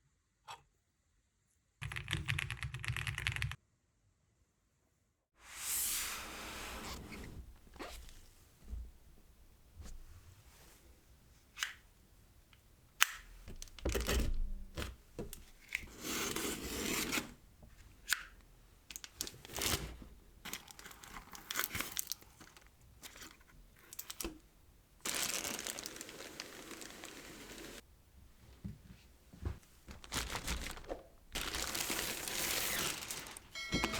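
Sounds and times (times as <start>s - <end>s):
packaging torn and crinkled: 20.5s - 22.7s, 25.0s - 27.8s, 29.9s - 33.6s.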